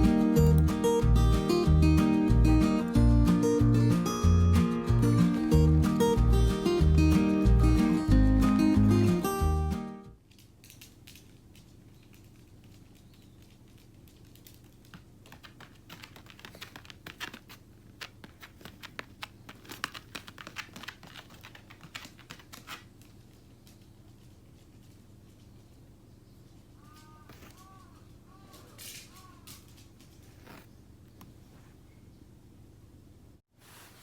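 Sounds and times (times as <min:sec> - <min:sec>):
faint low hum: 0:00.0 - 0:34.0
computer keyboard typing: 0:14.8 - 0:22.9.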